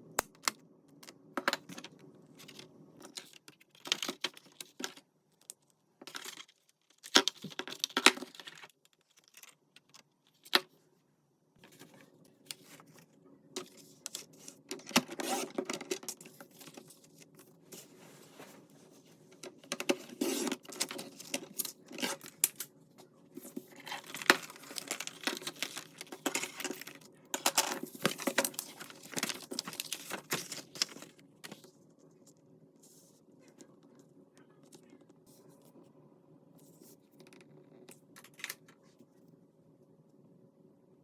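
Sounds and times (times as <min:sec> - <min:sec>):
low steady hum: 0:00.0 - 0:41.0
paper rustling and crackling: 0:11.6 - 0:31.8.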